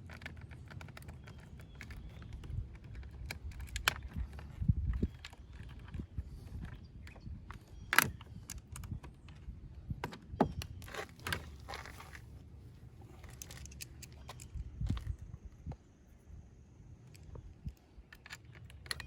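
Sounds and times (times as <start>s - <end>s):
nut driver clicking and scraping: 0.0s - 12.2s, 13.2s - 15.1s, 17.0s - 19.0s
plastic door panel parts handled: 0.0s - 12.3s.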